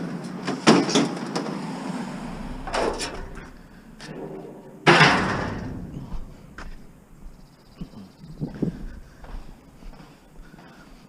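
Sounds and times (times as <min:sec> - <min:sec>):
loud metal crash ringing: 0:01.5 - 0:07.2
scrap metal clank: 0:02.6 - 0:06.6.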